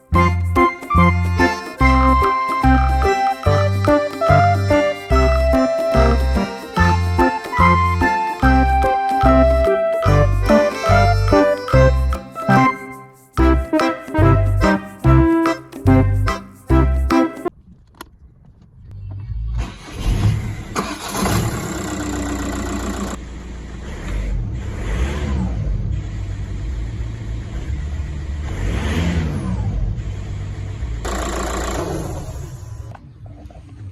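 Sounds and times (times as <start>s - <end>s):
diesel engine starting and revving: 19.6s - 32.0s.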